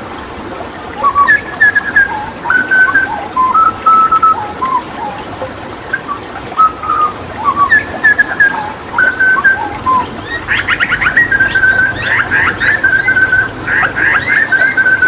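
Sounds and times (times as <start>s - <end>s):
running water hissing: 0.0s - 15.0s
bird singing whistled notes: 1.0s - 5.2s, 5.9s - 15.0s.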